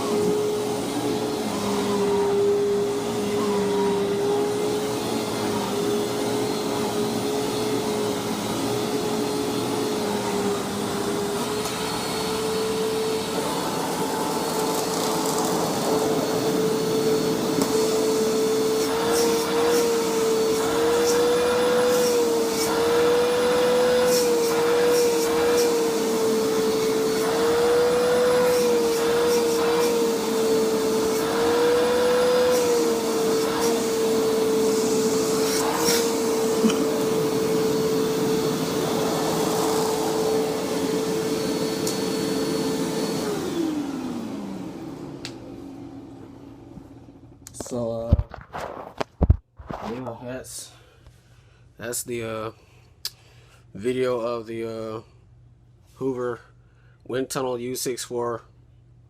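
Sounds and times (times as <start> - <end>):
vacuum cleaner running: 0.0 - 48.8.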